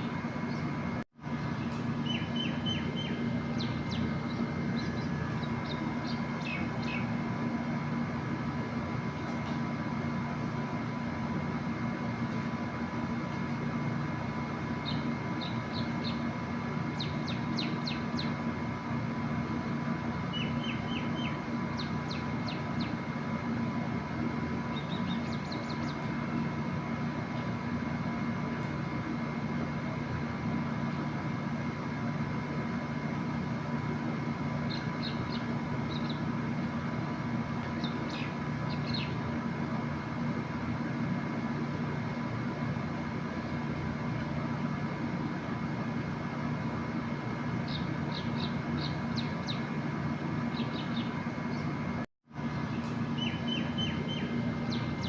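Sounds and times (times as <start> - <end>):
steady mechanical hum: 0.0 - 55.0
bird chirping: 1.4 - 7.2, 14.8 - 16.2, 17.0 - 18.4, 20.3 - 23.0, 24.7 - 26.1, 34.7 - 36.2, 37.8 - 39.2, 47.7 - 49.7, 50.5 - 51.7, 52.7 - 55.0.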